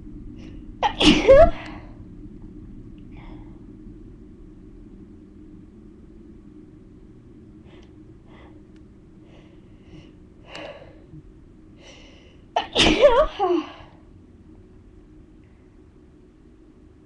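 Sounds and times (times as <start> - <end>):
faint intakes of breath: 7.6 - 11.2
woman sneezing: 12.6 - 13.9.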